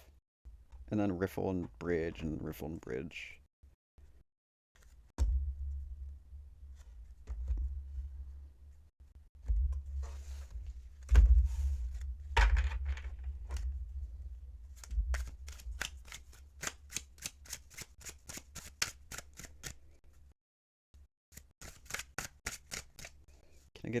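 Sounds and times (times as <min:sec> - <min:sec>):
cards riffle shuffling: 0:14.8 - 0:19.9, 0:21.4 - 0:23.2.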